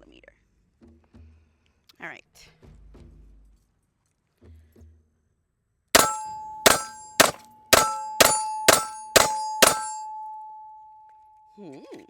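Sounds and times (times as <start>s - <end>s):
pistol shots: 6.0s - 10.0s
metallic ringing tone: 6.0s - 12.0s.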